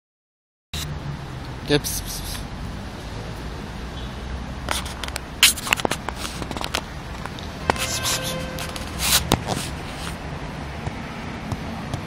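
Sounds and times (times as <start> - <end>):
close rustling and scraping: 4.6 - 10.3.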